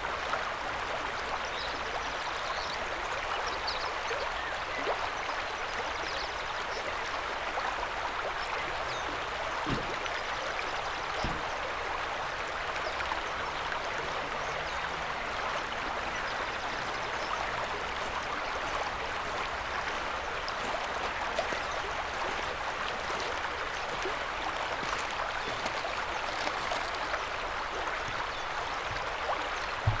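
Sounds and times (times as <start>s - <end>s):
river water rushing: 7.5s - 30.0s
small splashes: 8.5s - 30.0s.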